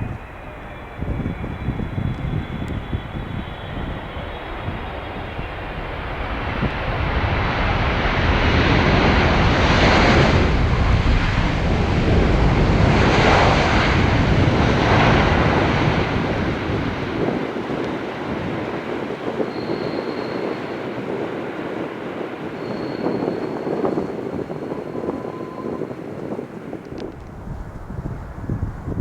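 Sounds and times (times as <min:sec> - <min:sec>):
jet airliner passing by: 0:00.0 - 0:29.0.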